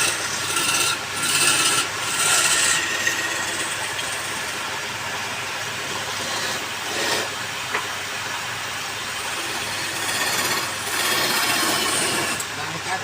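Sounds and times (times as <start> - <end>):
wood lathe running: 0.0 - 4.7, 5.9 - 7.3, 9.2 - 13.0
tool scraping spinning wood: 0.0 - 4.8, 5.8 - 7.4, 9.2 - 13.0.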